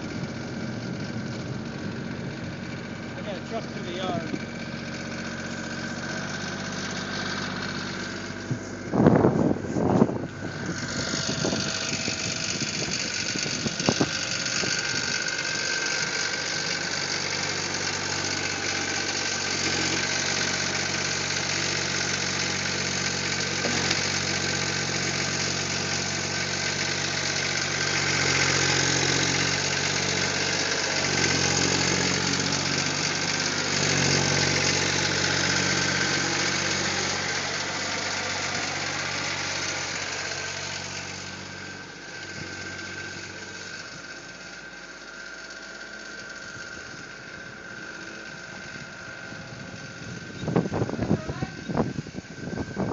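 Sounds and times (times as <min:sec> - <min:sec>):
skid steer diesel engine: 0:00.0 - 0:52.9.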